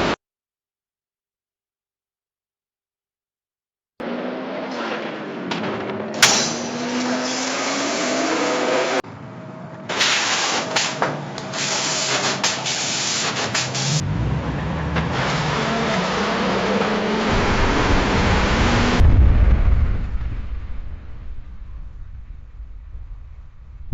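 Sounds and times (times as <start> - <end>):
knocks and clatter: 5.4 - 7.2
car crash impact: 5.4 - 7.5
vehicle hiss: 9.9 - 14.0
low rumble: 17.3 - 23.9.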